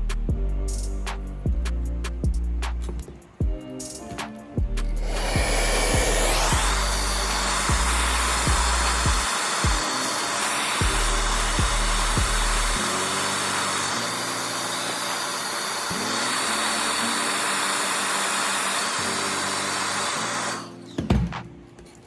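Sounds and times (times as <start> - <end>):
electronic music with low beat: 0.0 - 9.8
steady hiss: 4.9 - 20.8.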